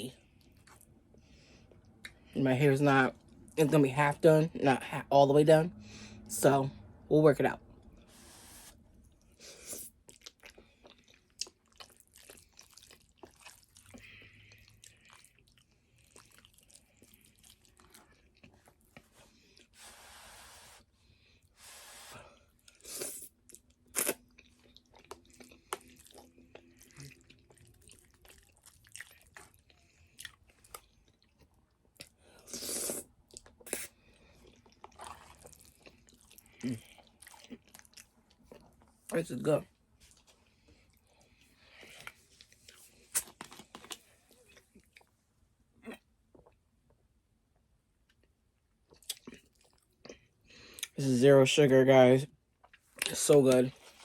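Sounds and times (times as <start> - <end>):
wet chewing and mouth clicks: 9.1 - 19.8, 22.6 - 39.1, 48.1 - 51.0
slurping: 19.0 - 20.9, 32.4 - 37.8.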